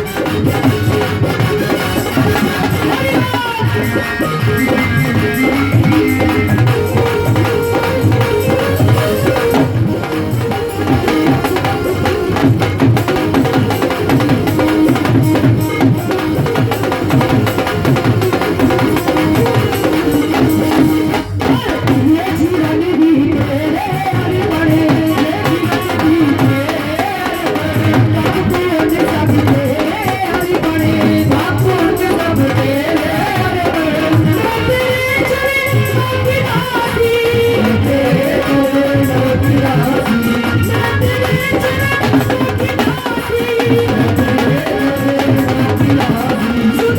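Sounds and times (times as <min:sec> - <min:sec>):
hand drums rhythm: 0:00.0 - 0:46.9
wavering melody line: 0:02.8 - 0:21.2.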